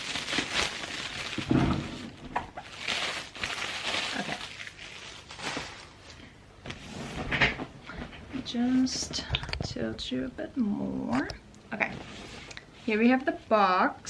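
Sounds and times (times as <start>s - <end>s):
plastic shrink wrap crinkling: 0.0s - 6.3s.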